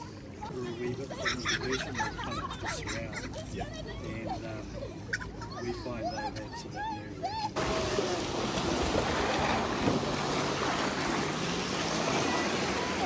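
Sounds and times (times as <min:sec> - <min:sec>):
wind: 0:00.0 - 0:13.0
water rushing: 0:07.6 - 0:13.0.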